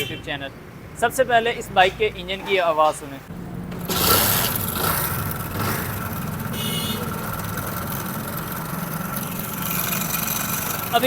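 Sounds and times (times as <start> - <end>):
motorcycle engine running with mechanical noise: 3.3 - 11.0.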